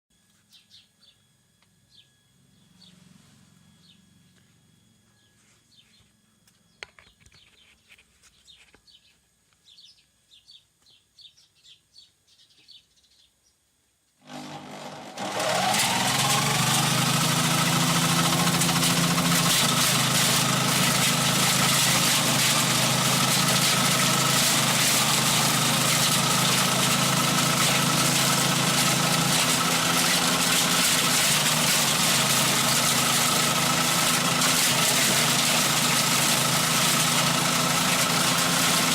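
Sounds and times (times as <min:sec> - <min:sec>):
faint bird chirps: 0:00.4 - 0:13.7
engine starting and running: 0:14.2 - 0:38.9.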